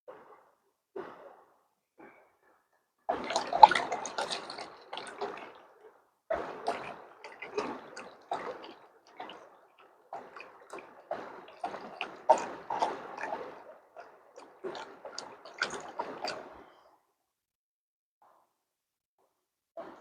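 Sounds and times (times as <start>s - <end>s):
water splashing and sloshing: 3.1s - 16.9s.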